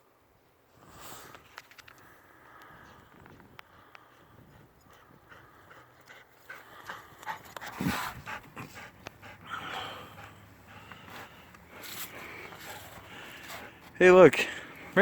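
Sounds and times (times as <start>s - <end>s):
dog panting: 4.0s - 11.8s, 12.5s - 14.0s.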